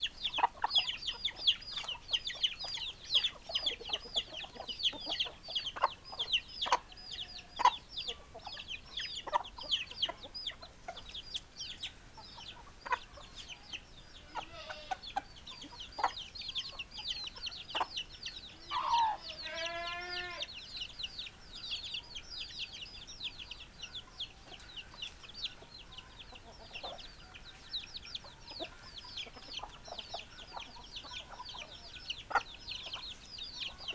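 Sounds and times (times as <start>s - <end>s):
chickens clucking: 0.0s - 33.9s
chicks peeping: 0.0s - 33.9s
chicken drawn-out call: 12.8s - 15.3s, 17.7s - 20.6s.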